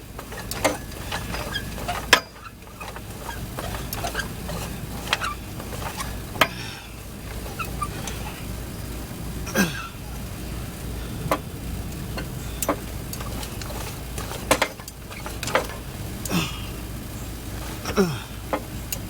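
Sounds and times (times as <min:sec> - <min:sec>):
sharp clicks and knocks: 0:00.0 - 0:08.3, 0:11.3 - 0:16.0
steady low hum: 0:00.0 - 0:19.0
short falling squeaks: 0:00.2 - 0:08.5, 0:12.6 - 0:15.8.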